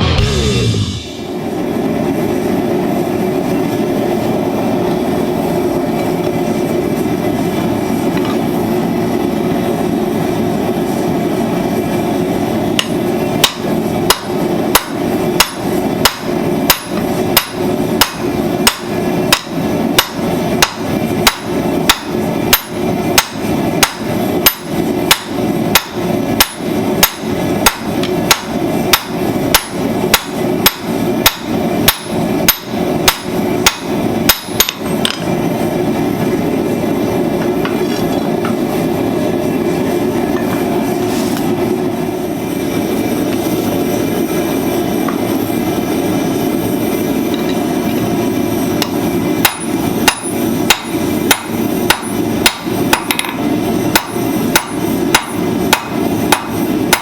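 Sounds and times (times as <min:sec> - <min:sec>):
steady rushing noise: 0:00.0 - 0:03.8
hammer striking steel on anvil: 0:12.8 - 0:35.3, 0:48.8 - 0:57.0.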